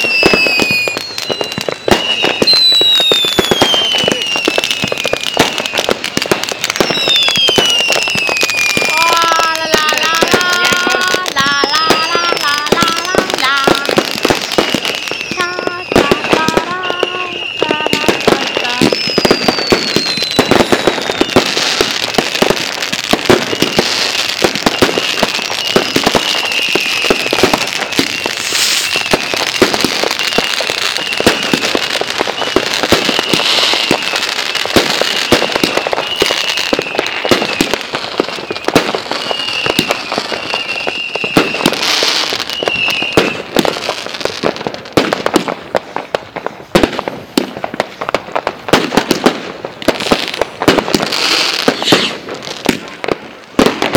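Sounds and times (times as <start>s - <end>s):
fireworks crackling: 0.0s - 53.9s
high wavering whistling tone: 10.2s - 21.4s, 25.4s - 29.4s.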